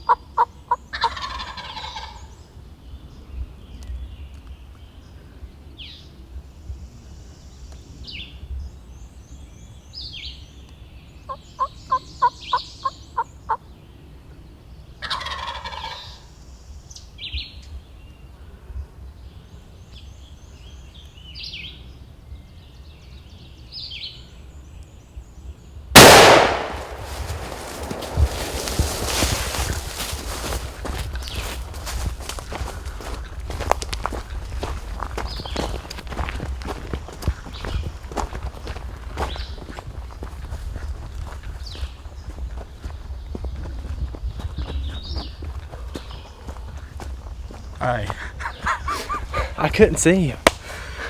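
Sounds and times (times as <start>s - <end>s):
songbirds chirping: 0.0s - 51.0s
wild turkey yelping and gobbling: 0.1s - 2.2s, 15.0s - 16.2s
shotgun blast: 26.0s - 29.3s.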